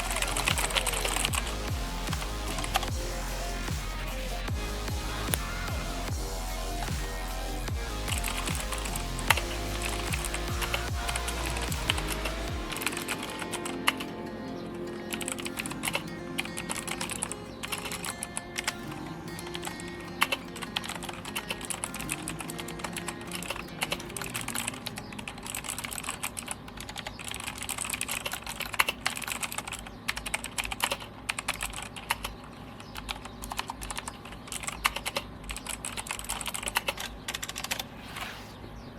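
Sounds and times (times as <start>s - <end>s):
mechanical keyboard typing: 20.2s - 37.9s.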